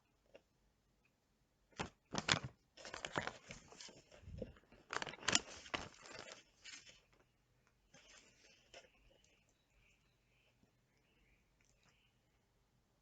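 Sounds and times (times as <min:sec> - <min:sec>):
crackly tearing and crinkling: 0:01.8 - 0:09.4.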